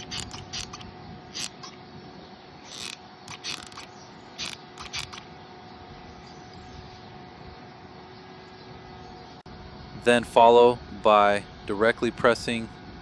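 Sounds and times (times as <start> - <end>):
glue gun trigger clicks: 2.7 - 5.2.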